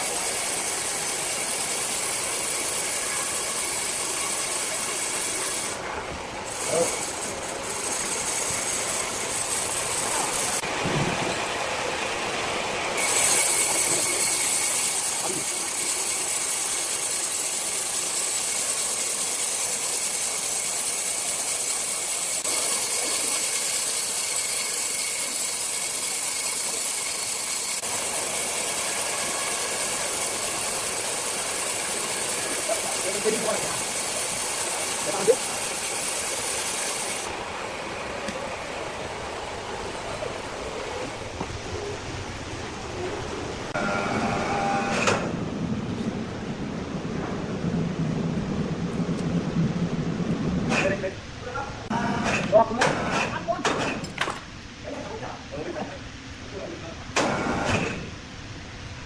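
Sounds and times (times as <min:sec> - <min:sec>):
circular saw hissing: 0:00.0 - 0:10.7, 0:11.5 - 0:43.8.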